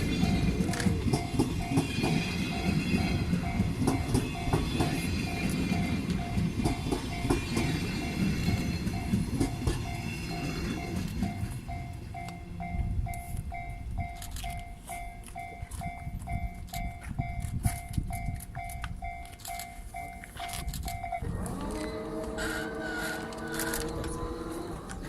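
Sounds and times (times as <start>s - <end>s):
level-crossing warning bell: 0.0s - 25.0s
scattered clicks: 0.2s - 2.2s, 13.1s - 22.4s.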